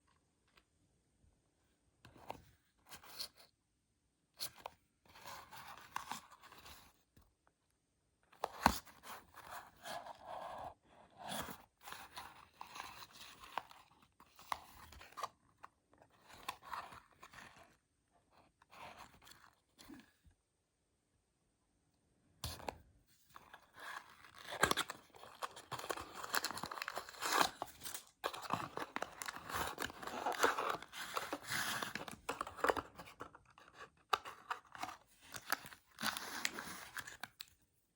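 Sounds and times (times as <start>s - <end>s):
packaging crinkling and tearing: 23.8s - 33.1s.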